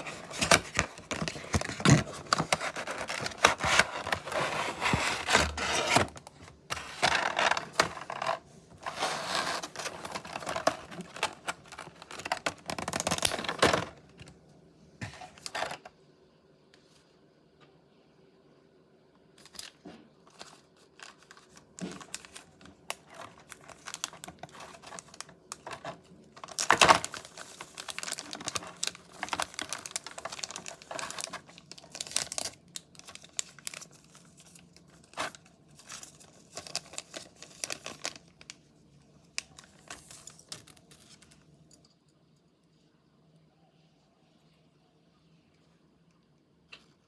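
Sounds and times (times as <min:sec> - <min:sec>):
packaging tearing: 0:00.0 - 0:14.1, 0:20.3 - 0:38.2
packaging crinkling and rustling: 0:00.0 - 0:14.4, 0:15.0 - 0:15.9, 0:19.4 - 0:38.7, 0:39.3 - 0:41.4.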